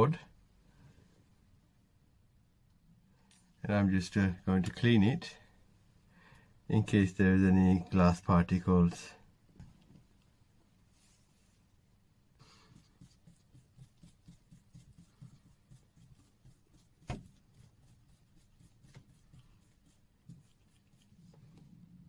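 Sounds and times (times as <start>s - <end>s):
faint rapid rubbing strokes: 12.4s - 22.0s.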